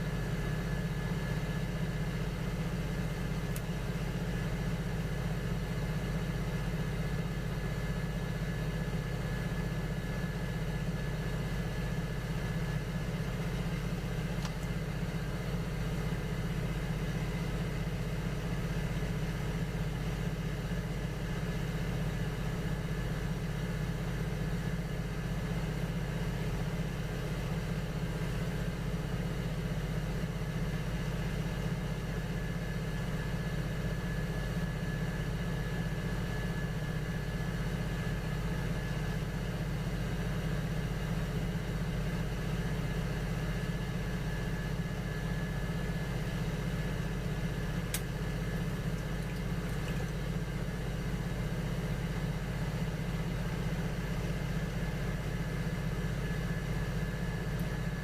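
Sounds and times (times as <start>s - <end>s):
potter's wheel motor humming: 44.9s - 52.8s.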